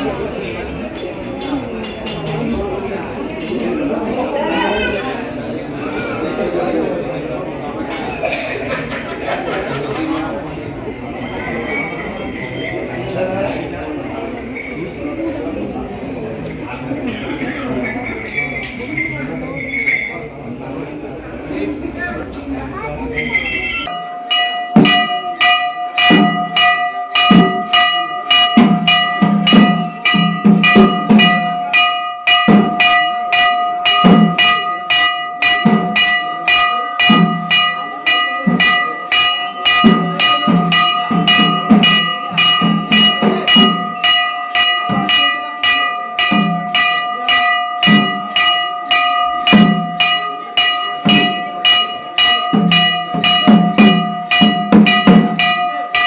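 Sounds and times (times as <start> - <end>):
temple bell ringing rapidly: 0.0 - 20.8, 22.8 - 56.0.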